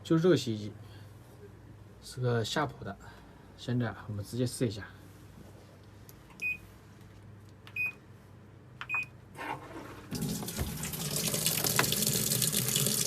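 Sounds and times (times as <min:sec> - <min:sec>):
washing machine beeping: 0:06.4 - 0:06.6, 0:07.8 - 0:08.0, 0:08.8 - 0:09.2
water rushing into machine: 0:10.1 - 0:13.0.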